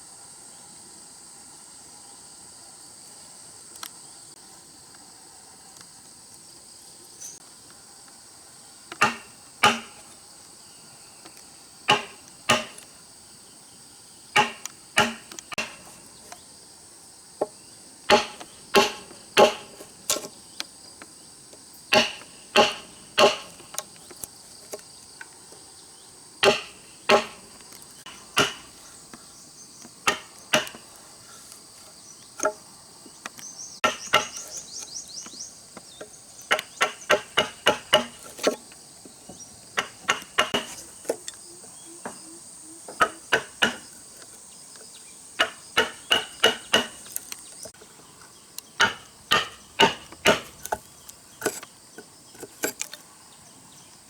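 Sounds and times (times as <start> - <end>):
high insect drone: 0.0 - 54.0
hand tool striking wood: 8.9 - 10.2, 11.9 - 13.0, 14.4 - 16.4, 17.4 - 20.4, 21.9 - 24.8, 26.4 - 31.6, 32.3 - 32.6, 33.2 - 41.4, 42.9 - 47.8, 48.8 - 53.0.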